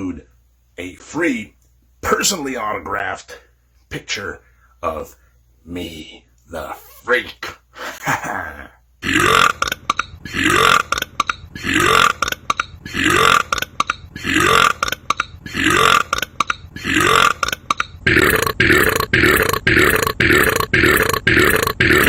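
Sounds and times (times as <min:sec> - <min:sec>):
man burping: 0:08.0 - 0:22.0.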